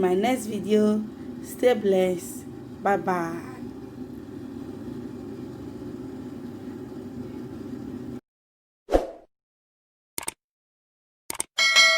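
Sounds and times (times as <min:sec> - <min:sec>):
low background hum: 0:00.0 - 0:08.2.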